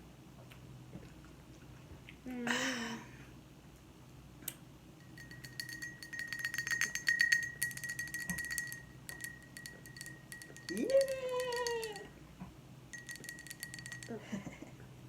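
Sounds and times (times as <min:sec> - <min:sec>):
metal spoon clinking ceramic bowl: 0:05.0 - 0:12.1, 0:13.0 - 0:14.2.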